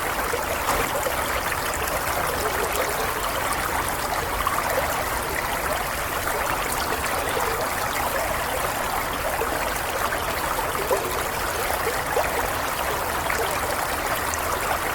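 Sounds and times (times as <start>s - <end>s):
stream water babbling: 0.0s - 14.9s.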